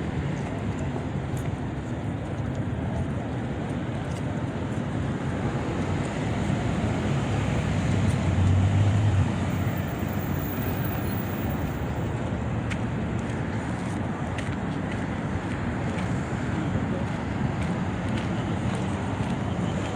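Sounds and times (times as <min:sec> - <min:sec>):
city street traffic: 0:00.0 - 0:19.9
vehicle engine rumble passing: 0:05.2 - 0:12.2.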